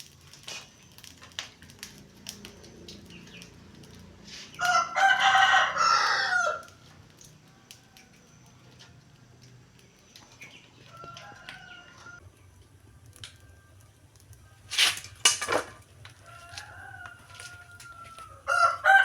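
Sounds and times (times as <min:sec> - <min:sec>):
rooster crowing: 0:04.6 - 0:06.9, 0:10.8 - 0:12.2, 0:16.1 - 0:19.0.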